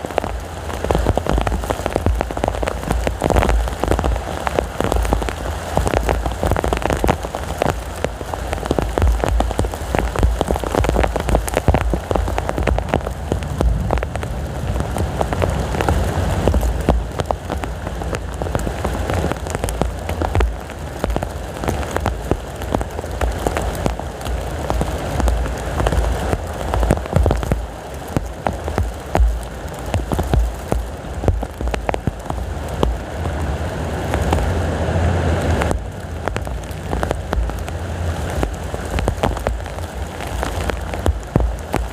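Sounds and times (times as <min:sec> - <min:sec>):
heavy rain pattering: 0:00.0 - 0:41.9
strong wind rumbling: 0:00.0 - 0:41.9.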